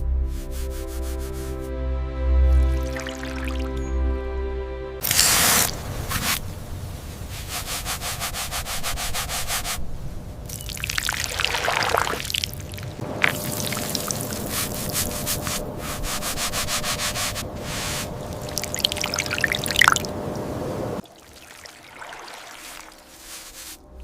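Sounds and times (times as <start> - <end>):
background music: 0.0 - 5.1
rubbing strokes on hard surface: 0.3 - 1.7, 7.4 - 9.8, 14.4 - 18.4, 22.6 - 23.8.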